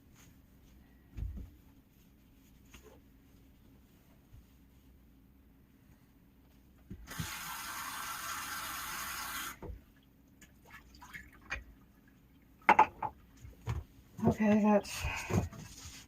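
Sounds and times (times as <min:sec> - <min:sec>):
tap water running into basin: 0:07.0 - 0:12.8.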